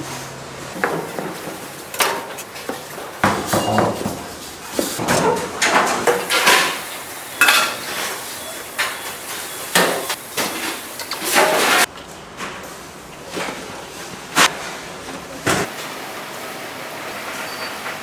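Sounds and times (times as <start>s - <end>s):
metal pots and pans clattering: 0.8s - 11.9s.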